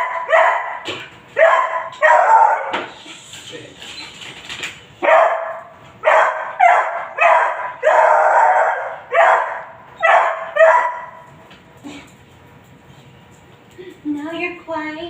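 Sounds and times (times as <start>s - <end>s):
puppy barking: 0.0s - 2.9s, 5.0s - 11.3s.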